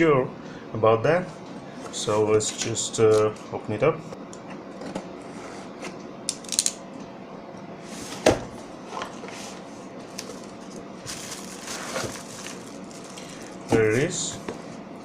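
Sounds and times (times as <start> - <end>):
packaging clicks and rustles: 10.2 - 13.7.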